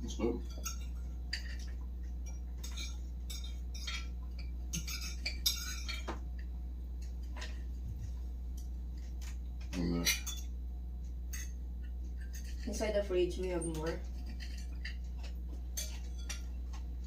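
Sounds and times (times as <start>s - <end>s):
low steady hum: 0.0s - 17.0s
cutlery clinking on plates: 0.4s - 6.2s, 13.8s - 16.8s.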